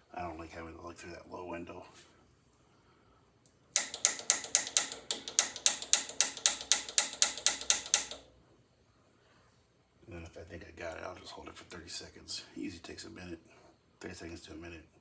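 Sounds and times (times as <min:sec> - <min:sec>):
piezo igniter clicking: 0:03.8 - 0:08.4.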